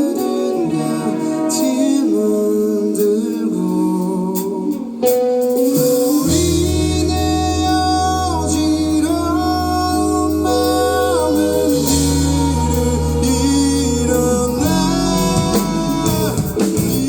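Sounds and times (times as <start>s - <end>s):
guitar: 0.0s - 17.0s
person singing gliding notes: 0.0s - 17.0s
live band playing: 4.4s - 17.0s
deep bass: 6.3s - 17.0s.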